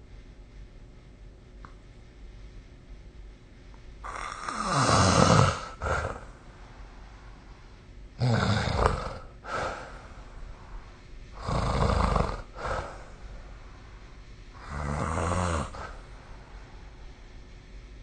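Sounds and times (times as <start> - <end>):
person snoring: 4.0 - 6.5, 8.2 - 13.8, 14.5 - 16.9
soft breath out: 9.4 - 11.4, 12.3 - 14.7.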